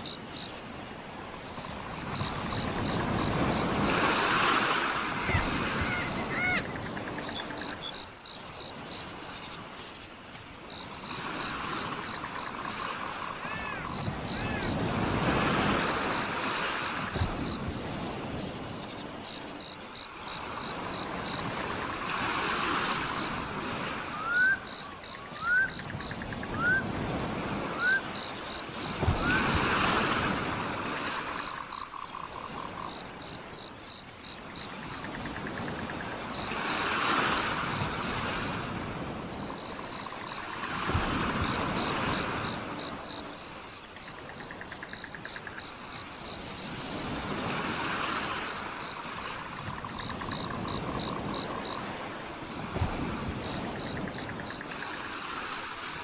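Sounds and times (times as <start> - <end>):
frogs and insects trilling: 0.0 - 56.0
waves washing in: 0.0 - 56.0.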